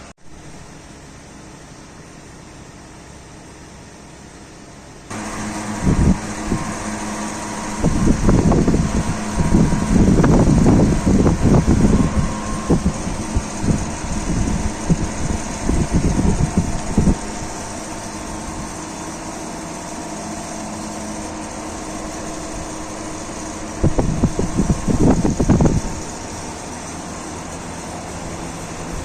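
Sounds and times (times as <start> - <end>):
electric fan motor hum: 0.0 - 29.0
wind buffeting microphone: 5.1 - 19.4, 21.5 - 29.0.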